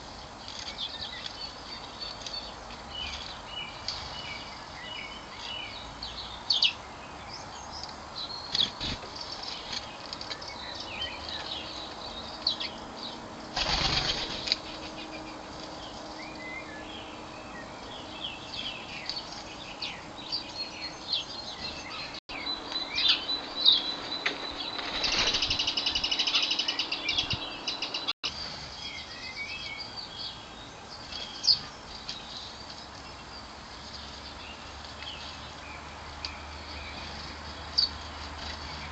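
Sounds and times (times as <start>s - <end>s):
birds chirping: 0.0s - 38.9s
rapid fluttering buzz: 13.4s - 16.2s, 24.6s - 27.8s
bird wingbeats: 13.5s - 15.0s, 24.5s - 26.2s.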